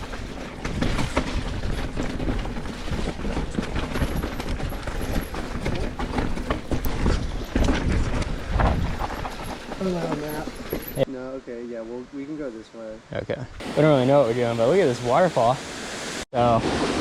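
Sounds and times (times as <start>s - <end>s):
wind rumble on microphone: 0.0s - 10.9s
bike rattling over rocks: 0.0s - 11.1s.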